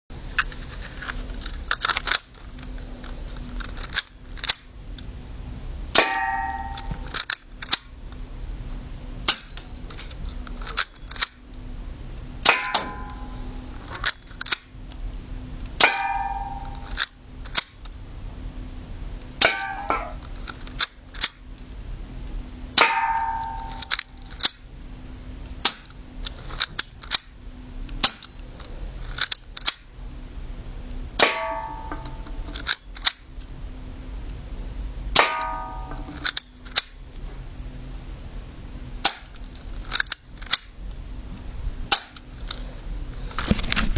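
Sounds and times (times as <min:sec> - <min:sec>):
bb ringing on metal target: 0:06.0 - 0:07.0, 0:12.5 - 0:13.2, 0:15.8 - 0:16.8, 0:19.4 - 0:20.2, 0:22.8 - 0:23.8, 0:31.2 - 0:32.1, 0:35.2 - 0:36.1
bb gun shots snapping: 0:25.6 - 0:26.0.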